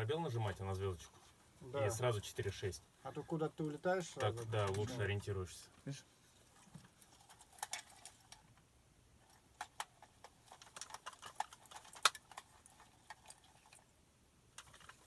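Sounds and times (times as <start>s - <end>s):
small gear clicks and rattles: 6.4s - 8.6s, 9.2s - 13.9s, 14.5s - 15.0s.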